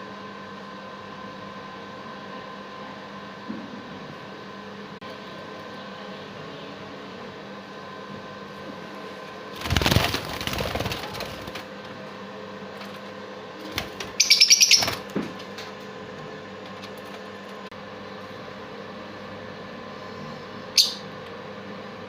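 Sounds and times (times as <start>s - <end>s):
background hum: 3.5s - 22.0s
bird wings flapping: 9.6s - 11.8s, 13.6s - 15.4s
high bird chirps: 14.1s - 15.0s, 20.7s - 21.1s.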